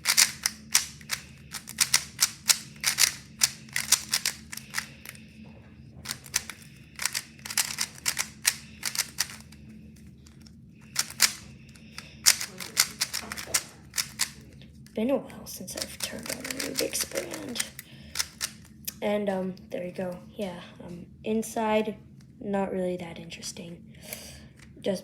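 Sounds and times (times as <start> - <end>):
puzzle cube plastic clicks: 0.0 - 5.2, 6.0 - 9.6, 10.2 - 14.5, 15.8 - 18.7.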